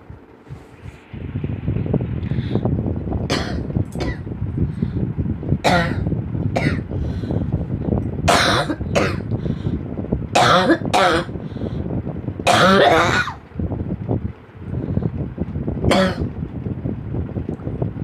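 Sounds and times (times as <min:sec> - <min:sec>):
steady low rumble: 0:00.0 - 0:18.0
person coughing: 0:03.3 - 0:04.2, 0:05.7 - 0:06.0, 0:06.6 - 0:06.9, 0:08.3 - 0:09.3, 0:10.4 - 0:11.3, 0:12.5 - 0:13.4, 0:15.9 - 0:16.3.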